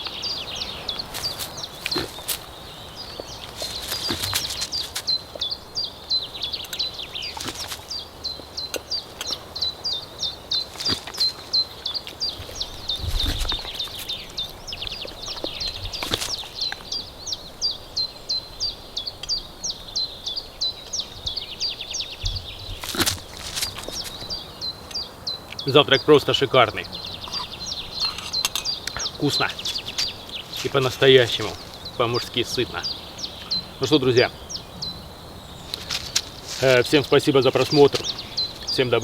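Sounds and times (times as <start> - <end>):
other birds singing: 0.0 - 39.0
songbird high chirps: 0.0 - 39.0.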